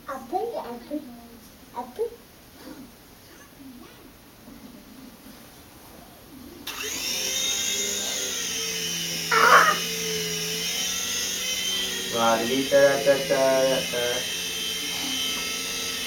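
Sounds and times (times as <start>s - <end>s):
toy helicopter rotors whining: 6.6s - 16.0s
brief pitched cry: 9.3s - 9.9s.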